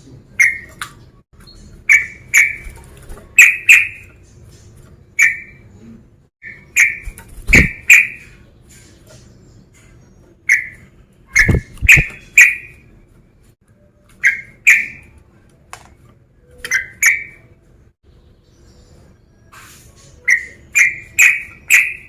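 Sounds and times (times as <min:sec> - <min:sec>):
bulbul calling sharp notes: 0:06.4 - 0:08.4, 0:10.5 - 0:12.8.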